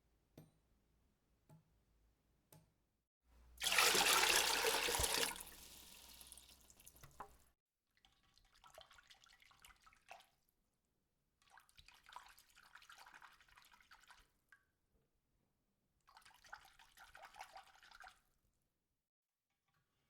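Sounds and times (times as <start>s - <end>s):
water splash: 3.6s - 7.2s
water dripping and trickling: 3.6s - 7.4s.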